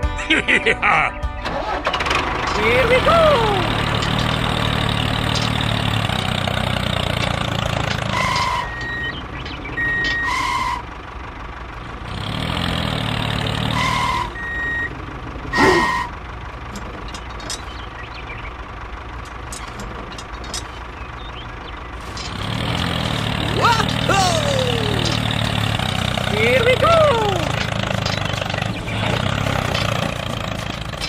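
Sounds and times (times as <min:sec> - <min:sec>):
engine idling: 0:01.2 - 0:31.0
quick rising squeal: 0:03.8 - 0:11.0, 0:12.8 - 0:16.2
reversing alarm beeps: 0:08.1 - 0:10.9, 0:13.8 - 0:15.0.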